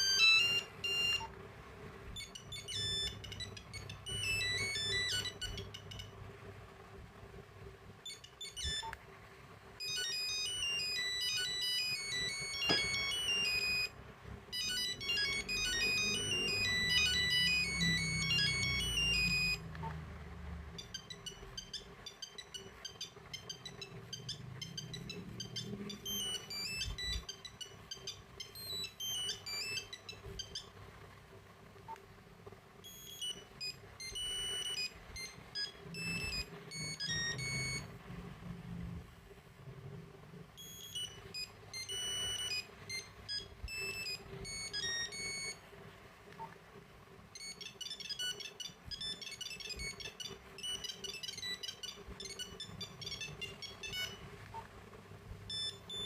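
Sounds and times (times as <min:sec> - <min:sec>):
phone ringtone beeping melody: 0:00.0 - 0:01.4, 0:02.1 - 0:06.2, 0:08.0 - 0:09.0, 0:09.8 - 0:20.0, 0:20.7 - 0:30.7, 0:32.8 - 0:38.0, 0:40.6 - 0:45.6, 0:47.4 - 0:54.3, 0:55.5 - 0:56.0.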